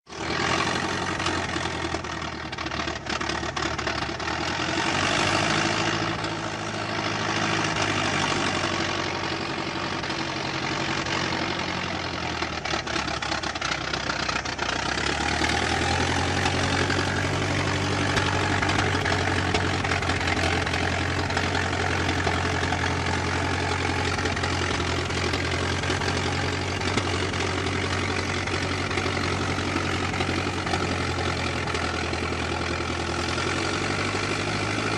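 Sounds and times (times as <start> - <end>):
old car engine running: 0.0 - 34.9.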